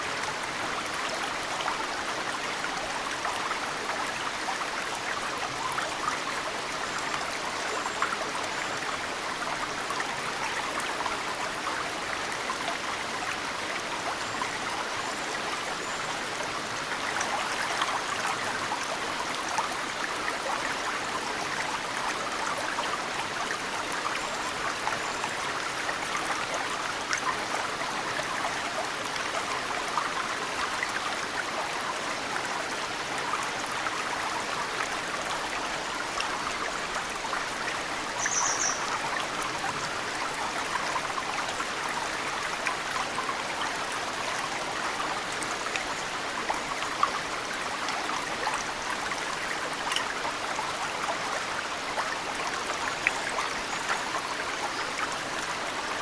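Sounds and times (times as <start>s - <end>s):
stream flowing: 0.0s - 56.0s
bird chirp: 38.2s - 38.9s.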